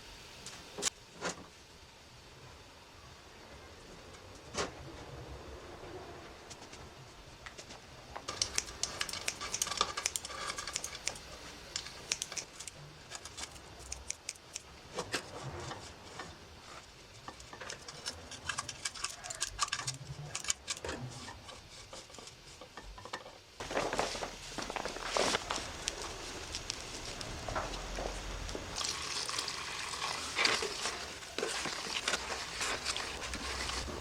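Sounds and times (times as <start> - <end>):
small hard objects clicking: 8.3 - 14.7, 17.2 - 21.0, 24.6 - 27.9.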